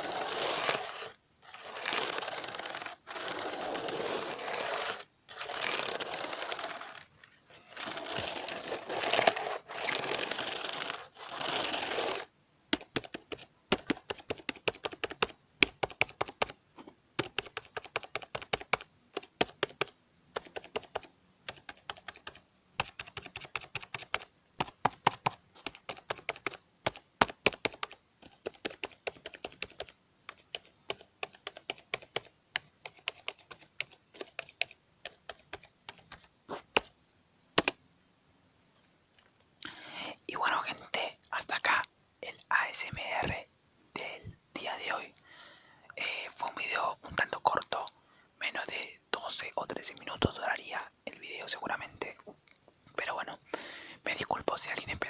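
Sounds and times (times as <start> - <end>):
keyboard key clicks: 37.6 - 37.8.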